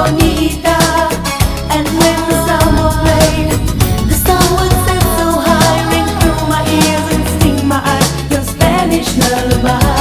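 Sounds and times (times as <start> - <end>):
upbeat song with steady beat: 0.0 - 10.0.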